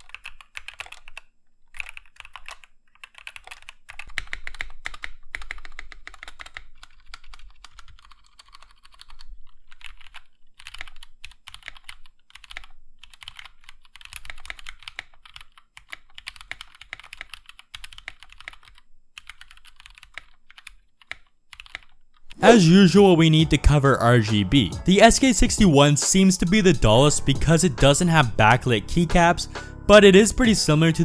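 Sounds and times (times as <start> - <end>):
mechanical keyboard typing: 0.0 - 22.0.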